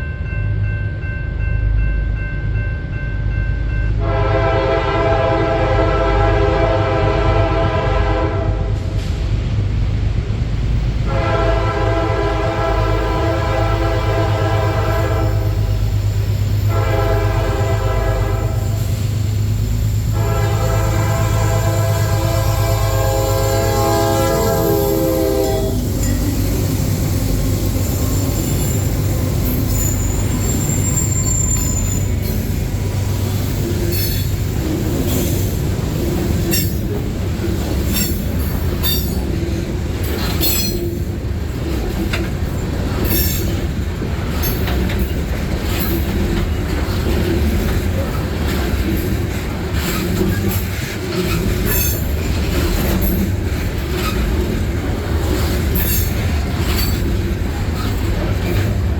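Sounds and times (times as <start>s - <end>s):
freight train diesel rumble: 0.0s - 58.9s
train wheels clacking: 11.3s - 58.9s
thin wheel squeal: 27.9s - 32.5s.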